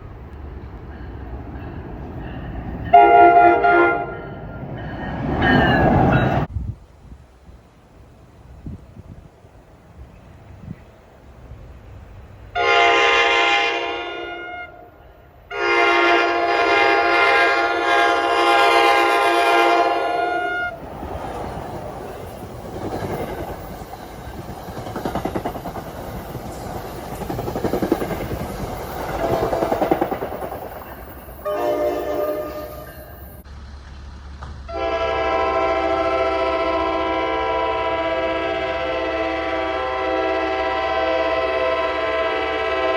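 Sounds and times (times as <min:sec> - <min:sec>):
train air horn blasts: 0:02.9 - 0:04.4, 0:12.5 - 0:20.8, 0:29.2 - 0:29.9, 0:31.4 - 0:33.4, 0:34.7 - 0:42.9
train wheels clattering on rails: 0:04.3 - 0:06.5, 0:20.8 - 0:31.4.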